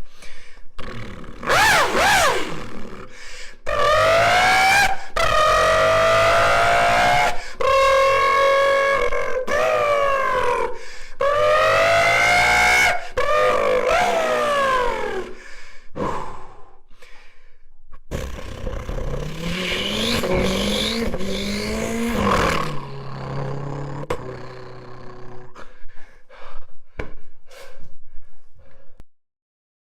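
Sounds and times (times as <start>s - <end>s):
person imitating car engine: 0.8s - 15.4s, 18.0s - 25.8s.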